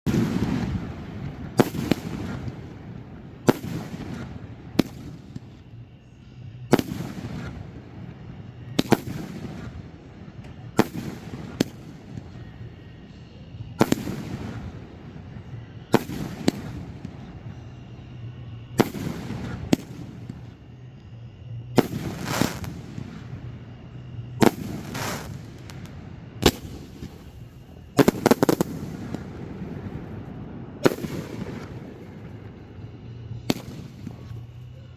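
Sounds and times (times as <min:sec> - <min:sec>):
fireworks shells bursting: 0:21.7 - 0:29.8.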